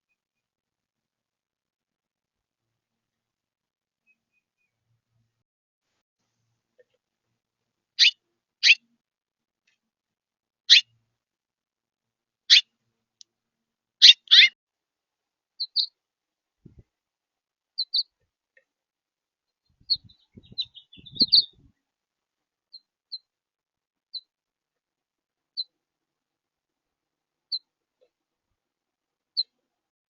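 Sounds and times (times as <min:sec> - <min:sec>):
songbirds chip calls: 0:08.0 - 0:08.8, 0:10.7 - 0:10.9, 0:12.5 - 0:12.7, 0:14.0 - 0:14.6, 0:15.6 - 0:15.9, 0:17.8 - 0:18.1, 0:19.7 - 0:21.7.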